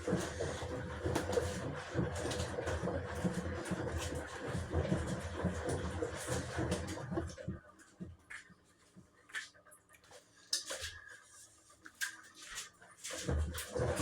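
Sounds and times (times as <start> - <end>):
washing machine rumbling: 0.0 - 8.2, 13.0 - 14.0.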